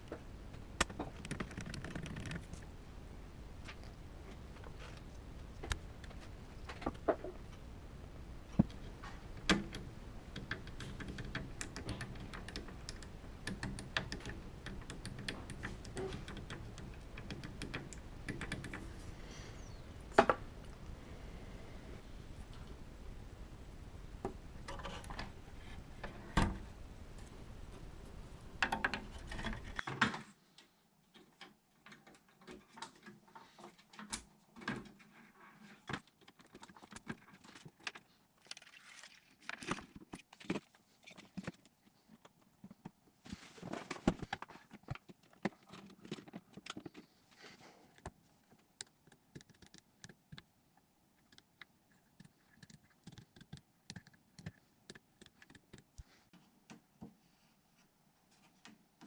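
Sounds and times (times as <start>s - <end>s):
steady hiss: 0.0s - 29.3s
small hard parts clicking and rattling: 0.8s - 2.7s, 8.5s - 19.1s, 51.2s - 56.0s.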